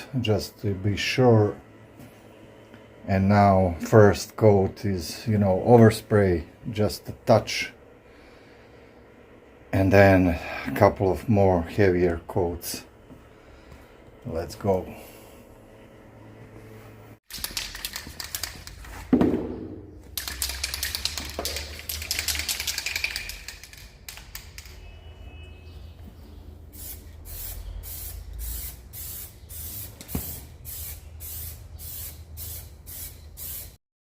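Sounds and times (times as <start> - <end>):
spray can clicks: 17.3 - 18.8, 20.1 - 24.8
spray paint hiss: 26.7 - 33.8.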